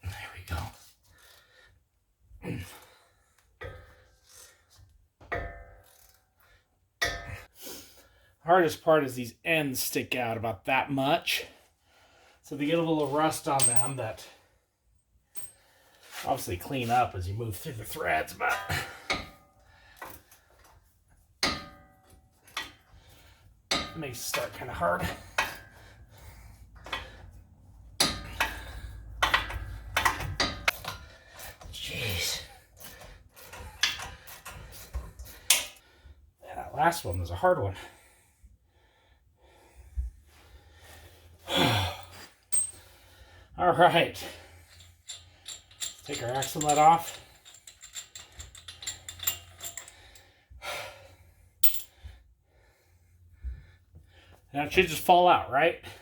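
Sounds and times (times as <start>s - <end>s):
steel hand tools clanking on metal: 23.7s - 25.8s, 28.0s - 31.6s, 44.8s - 50.0s.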